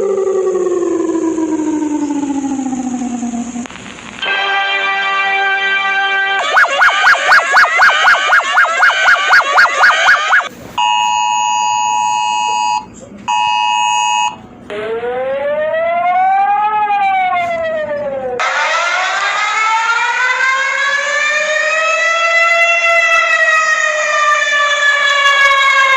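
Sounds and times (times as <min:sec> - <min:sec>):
siren wail rising and falling: 0:00.0 - 0:03.6, 0:05.0 - 0:10.5, 0:14.7 - 0:25.9
two-tone attention signal: 0:06.5 - 0:11.0.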